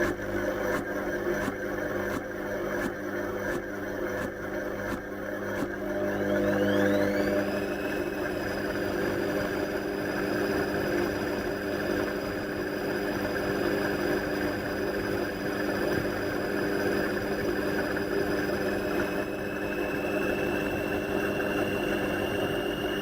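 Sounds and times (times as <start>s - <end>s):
washing machine running: 0.0s - 23.0s.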